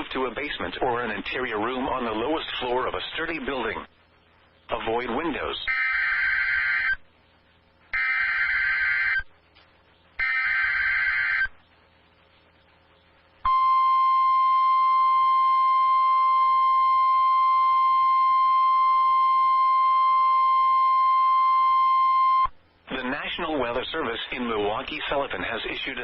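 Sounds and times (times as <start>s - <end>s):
steady alarm tone: 5.7s - 7.0s, 8.0s - 9.3s, 10.2s - 11.5s.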